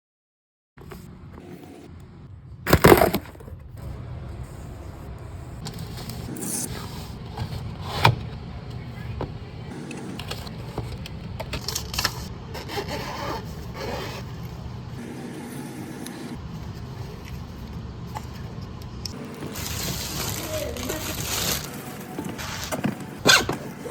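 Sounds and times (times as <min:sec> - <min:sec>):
steady low hum: 0:00.8 - 0:23.9
items scraping and rustling: 0:02.7 - 0:03.8, 0:05.6 - 0:08.4, 0:09.0 - 0:23.9.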